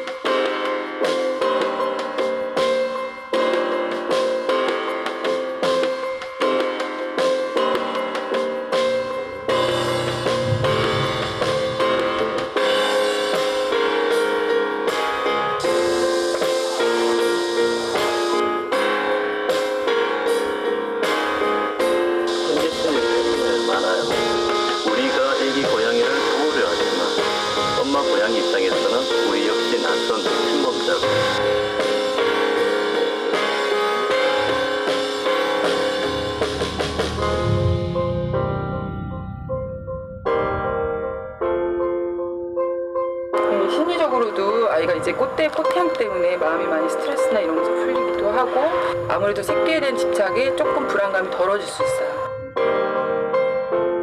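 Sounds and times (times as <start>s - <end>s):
background music with drum beat: 0.0s - 15.0s, 19.5s - 38.3s
steady drum beat: 8.9s - 12.8s, 35.1s - 38.5s.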